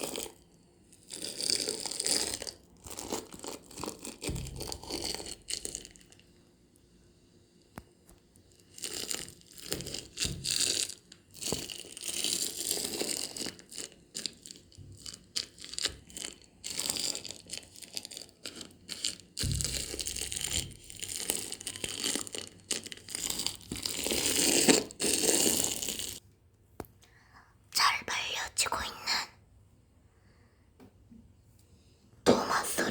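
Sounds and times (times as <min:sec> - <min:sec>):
crinkling handling noise: 0:08.6 - 0:26.2.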